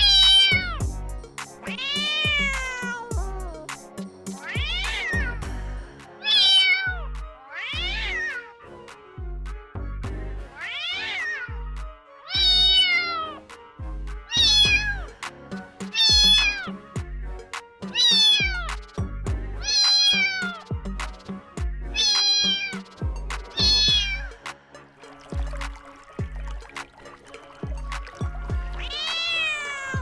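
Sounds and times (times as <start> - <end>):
cat meowing: 0.0 - 0.8, 1.6 - 3.7, 4.4 - 5.4, 6.2 - 8.5, 10.6 - 13.4, 14.3 - 15.1, 15.8 - 16.7, 17.9 - 18.7, 19.6 - 20.7, 22.0 - 22.9, 23.5 - 24.3, 28.6 - 30.0
background music with low beat: 0.0 - 8.1, 8.7 - 10.6, 11.5 - 30.0.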